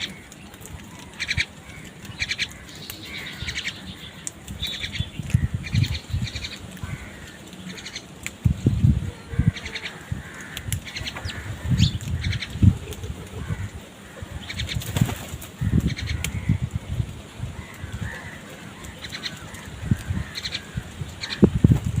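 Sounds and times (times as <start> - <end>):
high bird calls: 0.0 - 16.8, 17.6 - 21.7
crows beating wings: 0.0 - 22.0.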